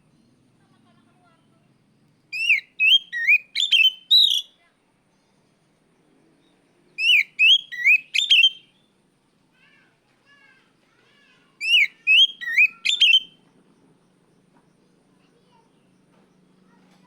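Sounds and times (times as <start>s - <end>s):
bird whistled calls: 2.4s - 4.6s, 7.0s - 8.9s, 11.6s - 13.4s.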